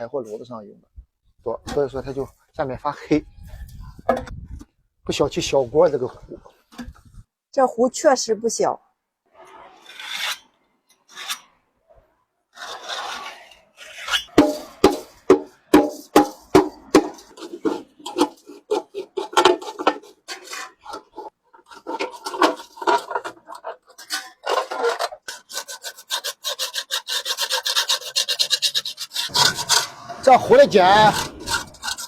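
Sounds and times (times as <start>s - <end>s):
hand tool scraping metal kettle: 12.6s - 32.0s.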